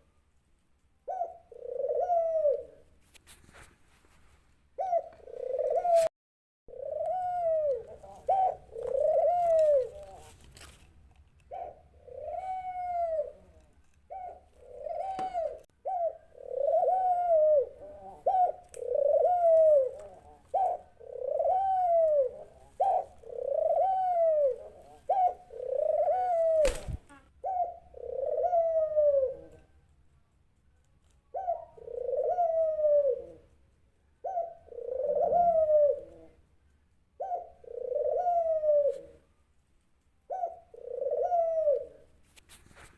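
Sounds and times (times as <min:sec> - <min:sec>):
dove cooing: 0:01.0 - 0:02.9, 0:04.8 - 0:06.1, 0:06.7 - 0:10.4, 0:11.5 - 0:29.8, 0:31.3 - 0:33.6, 0:34.2 - 0:36.5, 0:37.2 - 0:39.3, 0:40.2 - 0:42.1.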